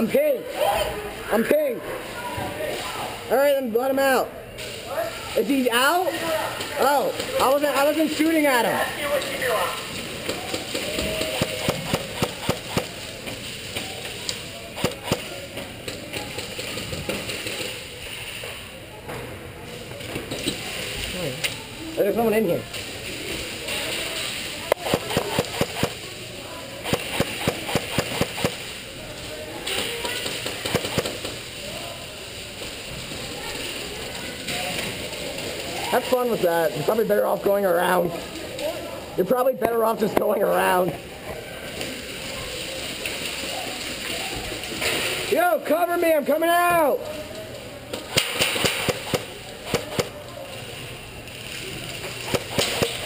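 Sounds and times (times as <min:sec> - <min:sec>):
airsoft guns firing: 0:10.1 - 0:13.1, 0:14.8 - 0:15.4, 0:24.7 - 0:26.1, 0:26.8 - 0:28.8, 0:29.6 - 0:31.5, 0:48.0 - 0:50.2, 0:52.1 - 0:53.0.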